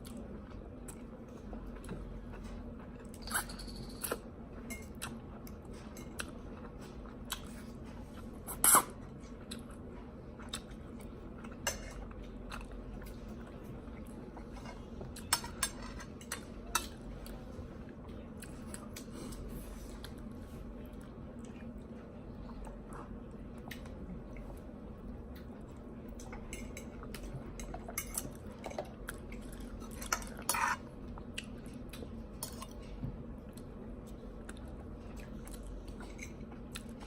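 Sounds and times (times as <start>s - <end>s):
chewing: 0.0s - 17.4s, 18.0s - 37.0s
steady low hum: 0.0s - 37.0s
utensils clinking on dishes: 3.1s - 5.0s, 14.6s - 17.0s.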